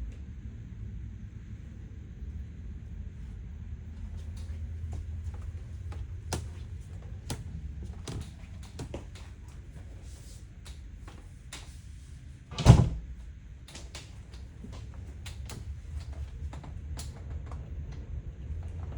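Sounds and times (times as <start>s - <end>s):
cabinets and doors clicking: 12.5s - 13.1s.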